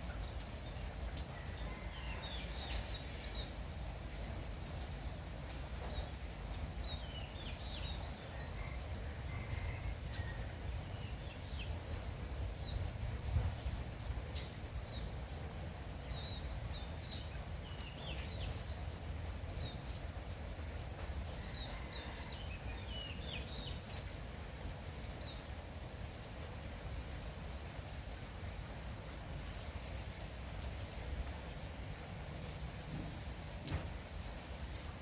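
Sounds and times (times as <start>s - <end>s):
small birds chirping: 0.0s - 8.7s, 10.1s - 26.2s
light rain falling: 0.0s - 35.0s.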